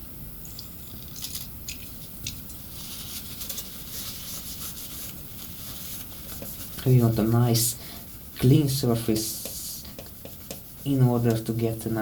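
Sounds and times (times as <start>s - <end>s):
tissue rubbing and wiping: 2.6s - 11.3s.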